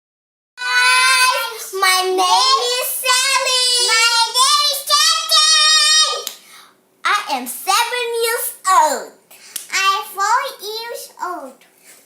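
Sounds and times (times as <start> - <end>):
child singing: 0.6 - 6.3.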